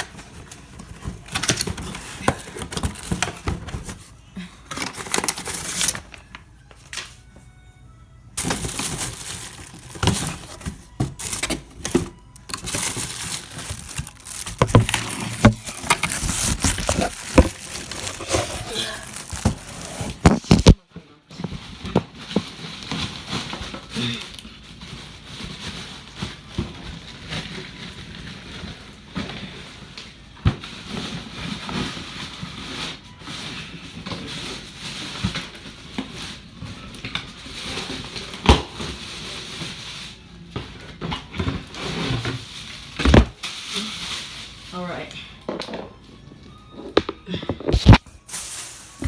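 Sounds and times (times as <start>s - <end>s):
cardboard packaging rustling: 0.0s - 7.2s, 8.4s - 20.8s, 46.6s - 49.0s.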